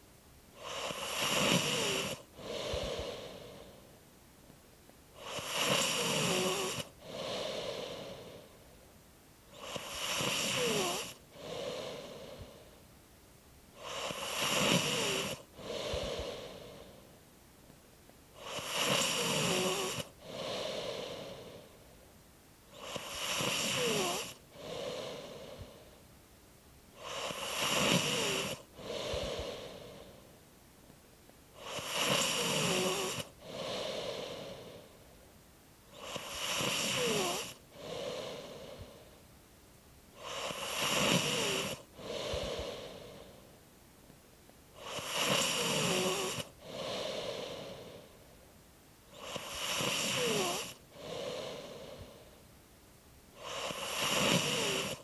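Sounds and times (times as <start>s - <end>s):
person snoring: 0.6s - 3.8s, 5.2s - 8.6s, 9.5s - 12.8s, 13.8s - 17.1s, 18.4s - 21.8s, 22.7s - 26.0s, 27.0s - 30.3s, 31.6s - 35.0s, 35.9s - 39.2s, 40.2s - 43.5s, 44.8s - 48.2s, 49.1s - 52.4s, 53.4s - 55.0s.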